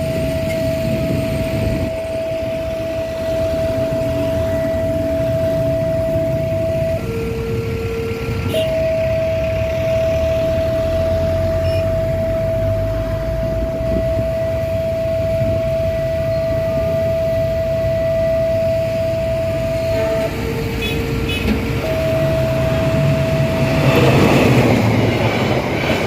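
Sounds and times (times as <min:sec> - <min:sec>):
level-crossing warning siren: 0:00.0 - 0:26.0
traffic engine rumble: 0:00.0 - 0:26.0.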